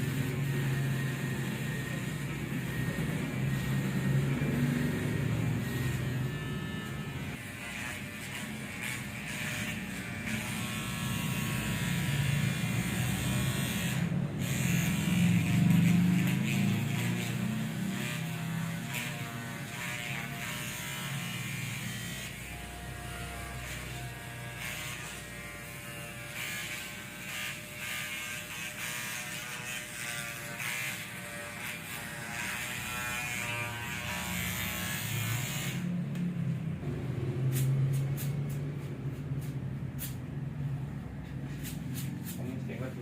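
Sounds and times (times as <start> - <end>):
electric shaver buzzing: 0.0 - 43.0.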